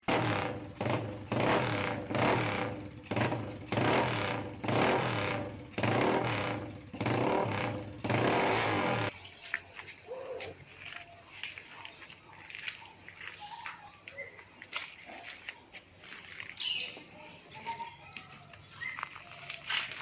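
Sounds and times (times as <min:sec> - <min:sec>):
motorcycle engine revving: 0:00.0 - 0:09.2.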